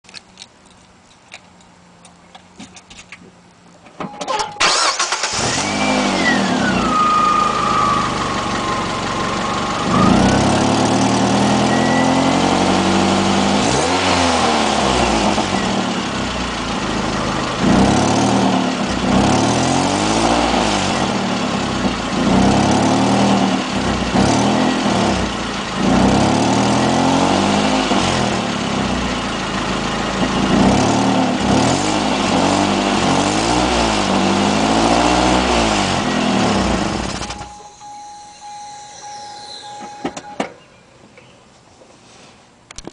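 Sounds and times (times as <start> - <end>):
car engine starting: 4.0 - 40.6
engine idling with throttle blips: 4.0 - 40.6
falling engine whine: 4.0 - 41.4.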